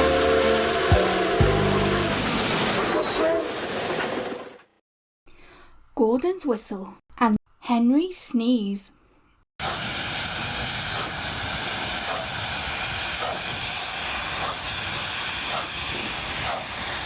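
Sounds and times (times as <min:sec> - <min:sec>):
steam locomotive running: 0:00.0 - 0:04.7, 0:09.6 - 0:17.0.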